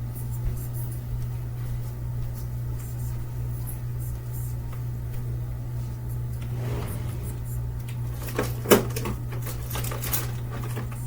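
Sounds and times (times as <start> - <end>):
steady low hum: 5.8 - 8.2.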